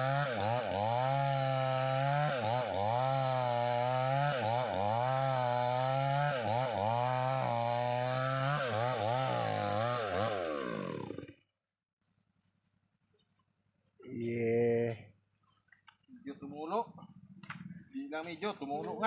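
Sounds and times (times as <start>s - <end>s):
chainsaw engine running: 0.0s - 11.5s.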